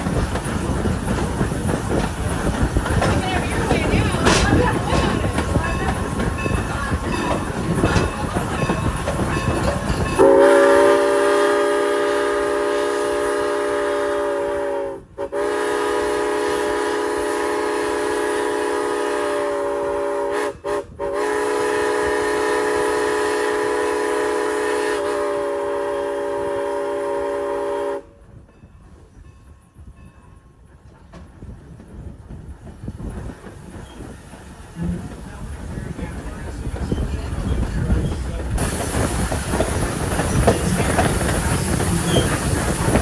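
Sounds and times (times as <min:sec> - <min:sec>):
low rumble of running train: 0:00.0 - 0:43.0
steam whistle chord: 0:10.2 - 0:28.0.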